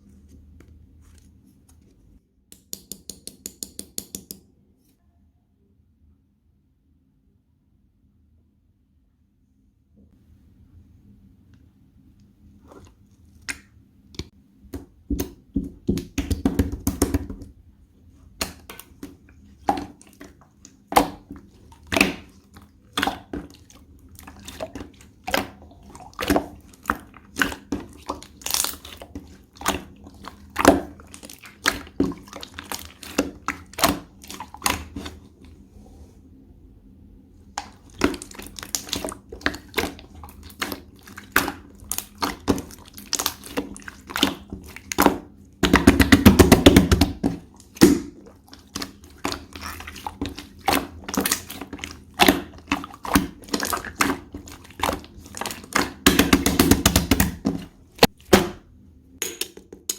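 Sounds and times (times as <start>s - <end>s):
slime squishing and popping: 18.4s - 35.2s, 37.6s - 58.6s.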